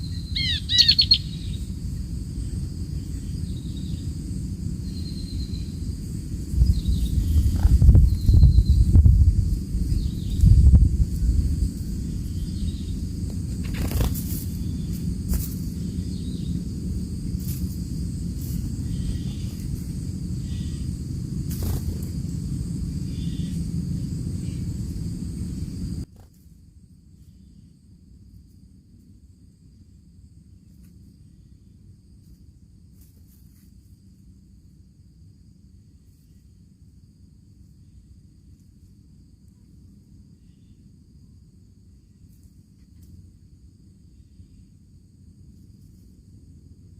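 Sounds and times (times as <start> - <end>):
steady low rumble: 0.0 - 30.7
crickets chirring: 0.0 - 46.9.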